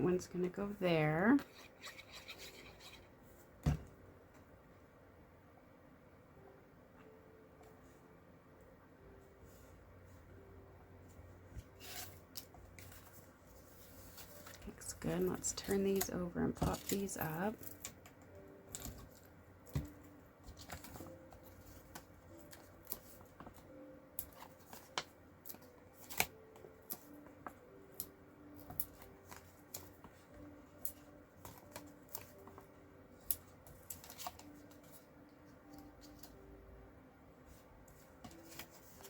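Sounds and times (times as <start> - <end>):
paper rustling: 11.6 - 18.0, 33.7 - 35.1, 37.5 - 39.0.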